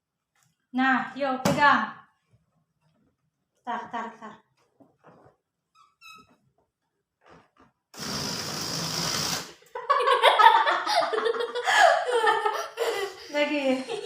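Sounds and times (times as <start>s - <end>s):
balloon neck squealing: 5.7s - 6.4s, 8.0s - 9.6s
air hissing from balloon: 8.0s - 9.7s.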